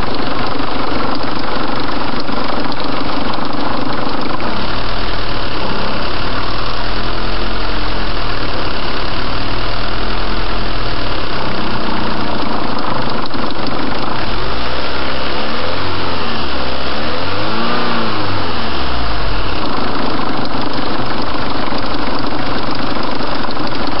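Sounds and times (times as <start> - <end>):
car engine revving: 0.0 - 24.0.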